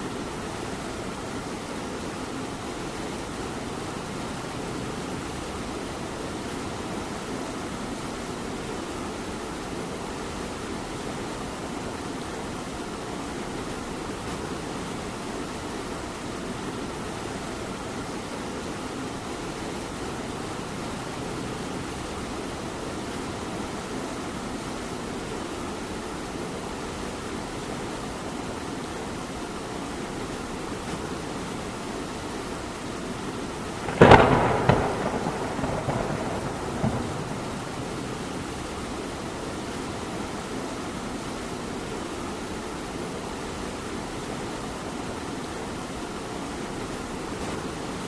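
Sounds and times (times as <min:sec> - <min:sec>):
light rain falling: 0:00.0 - 0:48.0
thunder crack and rumble: 0:33.7 - 0:39.3.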